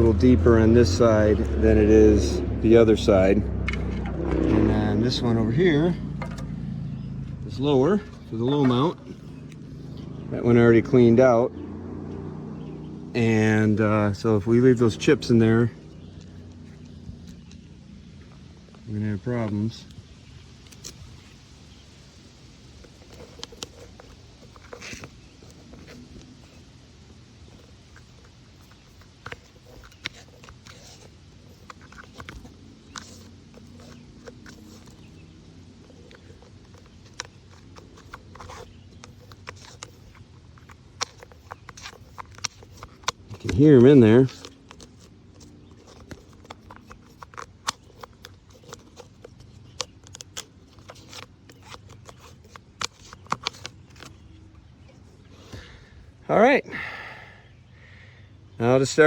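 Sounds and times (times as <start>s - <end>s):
clicking and crackling inside tree: 15.7s - 56.0s
wood chips scraping: 27.4s - 54.1s.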